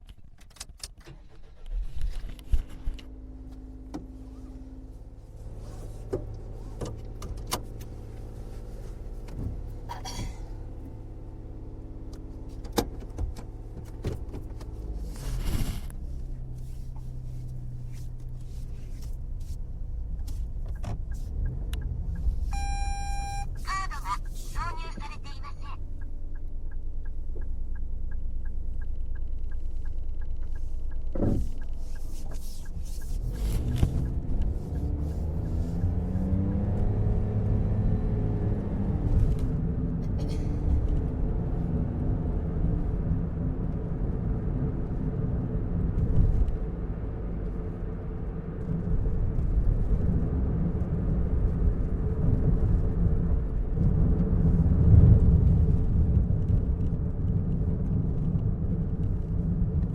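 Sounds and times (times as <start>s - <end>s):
car engine idling and driving: 0.0s - 59.9s.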